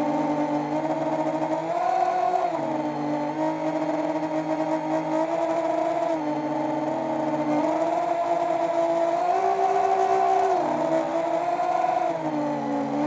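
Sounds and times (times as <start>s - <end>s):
quadcopter motors whining: 0.0s - 13.0s.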